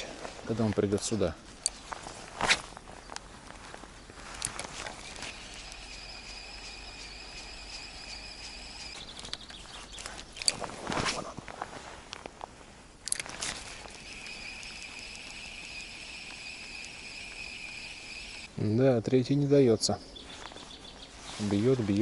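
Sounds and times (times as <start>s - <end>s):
fishing reel whirring: 4.9s - 9.0s, 13.6s - 18.5s.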